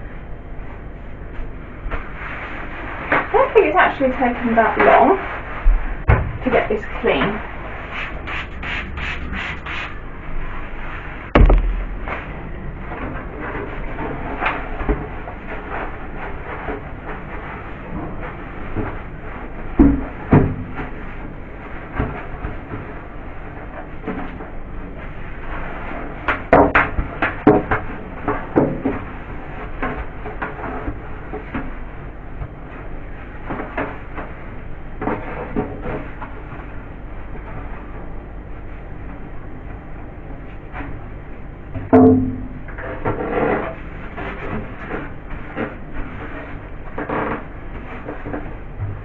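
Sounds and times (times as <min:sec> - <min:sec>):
steady background noise: 0:00.0 - 0:25.5
knocks of fridge parts handled: 0:06.1 - 0:06.4, 0:11.4 - 0:12.3
quick wiping strokes: 0:07.8 - 0:10.0
loud sudden thud: 0:11.3 - 0:12.5.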